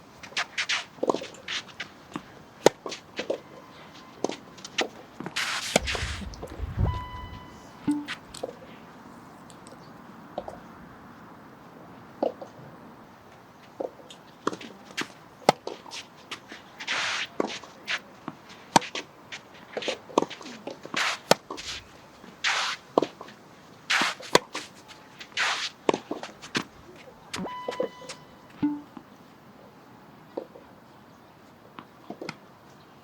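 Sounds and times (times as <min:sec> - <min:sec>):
shoes scuffing on court: 0:00.2 - 0:08.5, 0:14.4 - 0:27.1
racket hitting tennis ball: 0:05.3 - 0:08.5, 0:28.6 - 0:29.0
quick footsteps: 0:05.4 - 0:08.4
ball bouncing: 0:05.7 - 0:08.5, 0:28.6 - 0:29.0.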